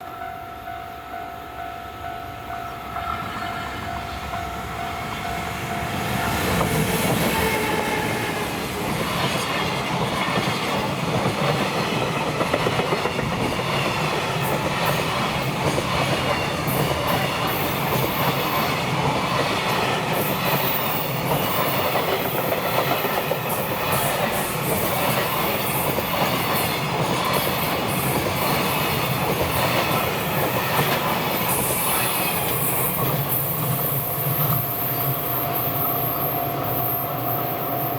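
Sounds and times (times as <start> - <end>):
train wheels clattering over rail joints: 8.7 - 34.7.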